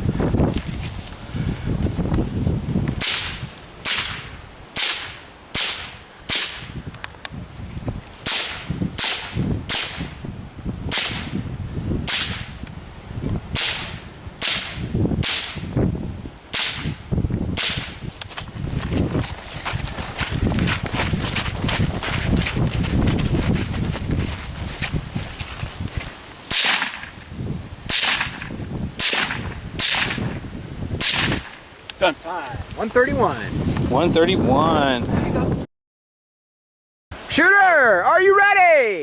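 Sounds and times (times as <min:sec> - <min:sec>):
low rustling rumble: 0:18.1 - 0:26.2
rifle shots: 0:26.5 - 0:27.1, 0:27.9 - 0:30.2, 0:31.0 - 0:31.6.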